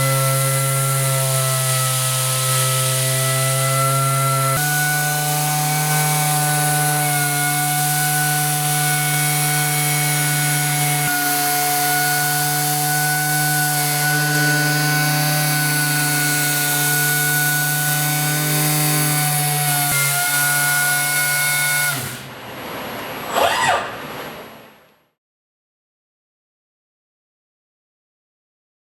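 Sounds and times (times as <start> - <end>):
orbital sander humming and whining: 0.0 - 22.2.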